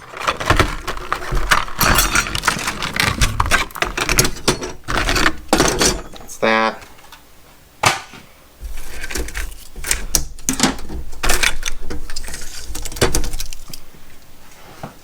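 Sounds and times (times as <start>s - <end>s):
small hard objects clicking and rattling: 0.0s - 6.3s, 8.7s - 13.8s.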